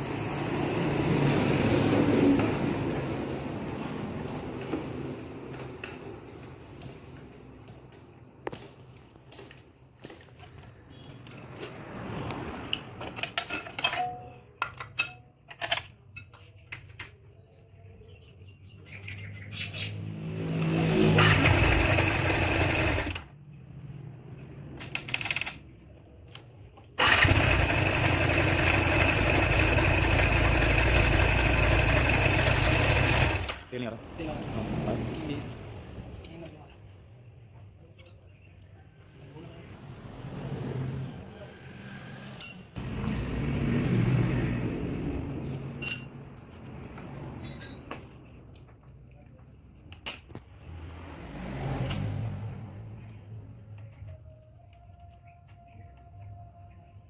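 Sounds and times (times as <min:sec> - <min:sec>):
motorcycle engine crackling: 0:21.1 - 0:23.2, 0:27.0 - 0:33.8
metallic clinks and knocks: 0:42.4 - 0:42.7, 0:45.8 - 0:46.2, 0:47.2 - 0:48.1.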